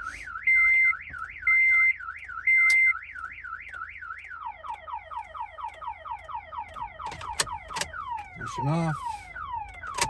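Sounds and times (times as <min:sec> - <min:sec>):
loud steady beep: 0:00.0 - 0:04.6
car alarm siren warbling: 0:00.0 - 0:10.0.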